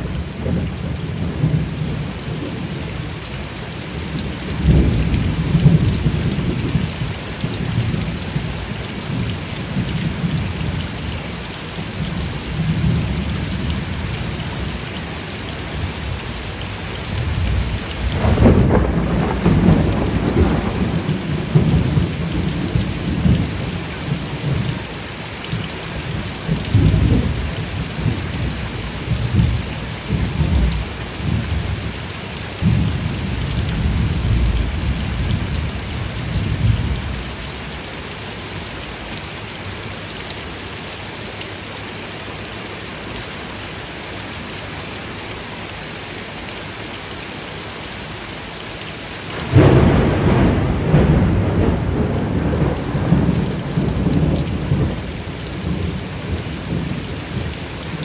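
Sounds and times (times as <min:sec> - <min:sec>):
heavy rain: 0:00.0 - 0:58.0
thunder rumbling: 0:17.2 - 0:24.6, 0:26.5 - 0:31.8, 0:32.6 - 0:37.7, 0:49.3 - 0:58.0
loud thunder burst: 0:17.3 - 0:23.2, 0:49.3 - 0:56.8.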